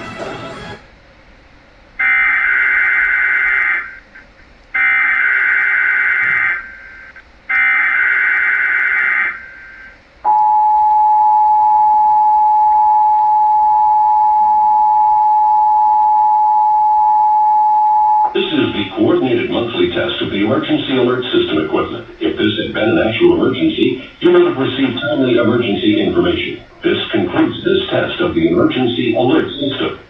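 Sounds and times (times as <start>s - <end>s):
digital data bursts: 18.3s - 30.0s.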